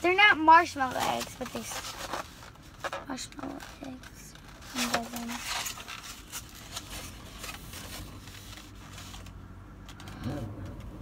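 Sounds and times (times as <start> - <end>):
candy packet rustling: 0.7 - 9.4.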